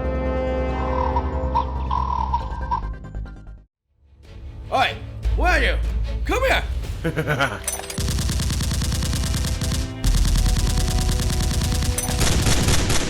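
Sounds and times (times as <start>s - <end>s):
automatic gunfire: 8.0s - 13.0s.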